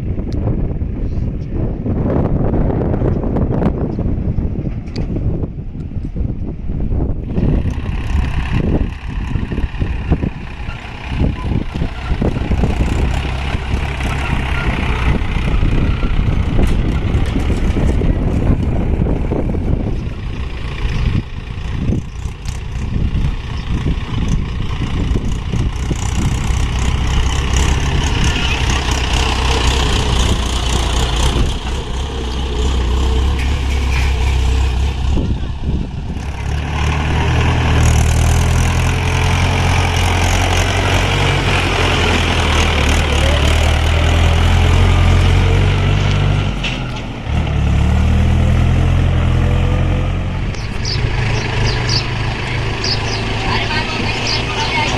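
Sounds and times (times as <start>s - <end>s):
heavy diesel engines running: 0.0s - 54.9s
knocks and clatter: 16.3s - 18.7s.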